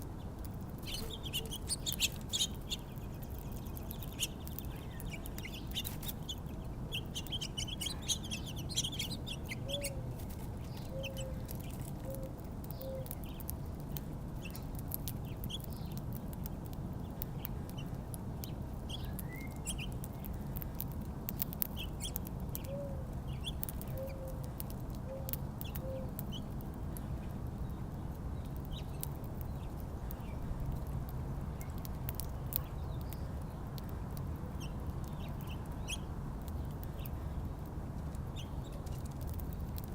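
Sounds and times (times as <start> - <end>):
small birds chirping: 0.0 - 39.9
steady low rumble: 0.0 - 39.9
dove cooing: 10.9 - 11.4.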